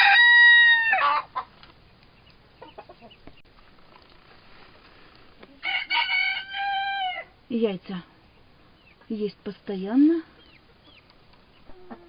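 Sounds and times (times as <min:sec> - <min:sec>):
rooster crowing: 0:00.0 - 0:01.3, 0:05.6 - 0:07.4
faint chicken clucks: 0:00.0 - 0:03.4, 0:10.2 - 0:12.0.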